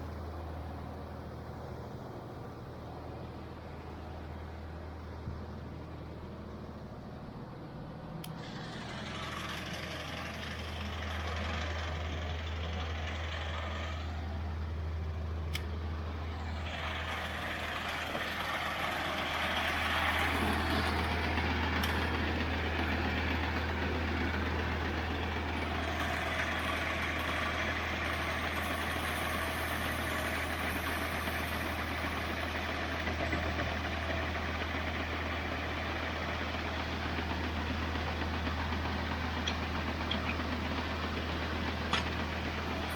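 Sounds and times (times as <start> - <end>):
tractor engine running: 0.0 - 42.9
feed grinder grinding corn: 8.3 - 14.1, 16.4 - 35.2.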